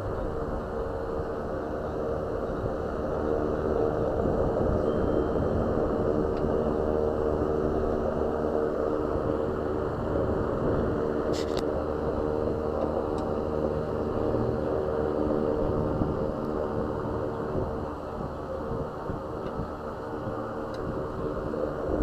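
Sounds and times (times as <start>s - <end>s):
car engine hum: 0.0s - 22.0s
road noise: 0.0s - 22.0s.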